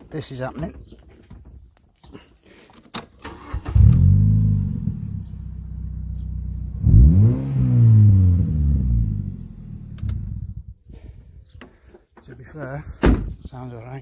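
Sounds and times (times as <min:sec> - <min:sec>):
car engine revving: 0:03.4 - 0:10.5.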